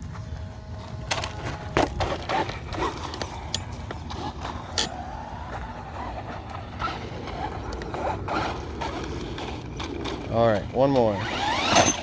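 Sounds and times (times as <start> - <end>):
rc truck electric motor whining: 4.0 - 12.0.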